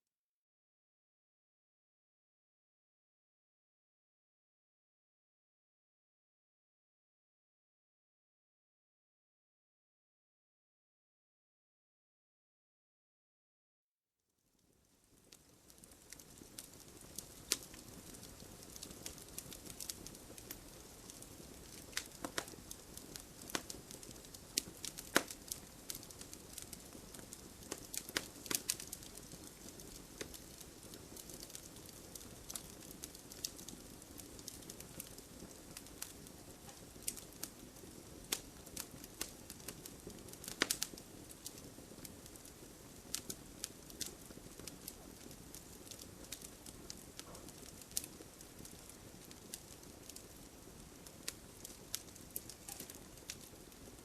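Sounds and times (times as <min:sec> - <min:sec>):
fire hissing softly: 0:14.4 - 0:54.0
wood fire crackling and popping: 0:14.6 - 0:54.0.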